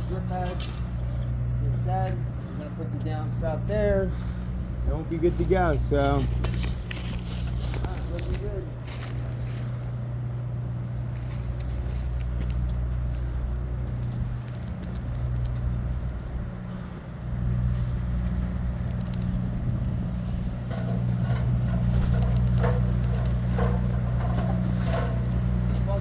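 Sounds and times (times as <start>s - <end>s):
vehicle engine idling: 0.0s - 26.0s.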